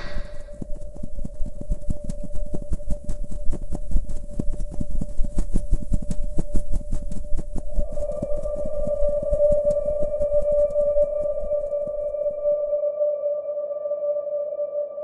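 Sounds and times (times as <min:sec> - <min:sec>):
slowed music drone: 0:07.7 - 0:15.0.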